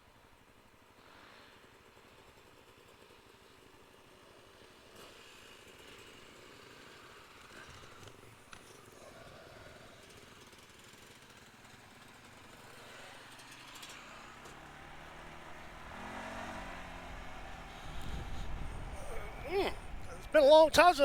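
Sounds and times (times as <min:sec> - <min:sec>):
off-road vehicle engine running: 0:01.1 - 0:21.0
approaching engine note: 0:12.6 - 0:21.0.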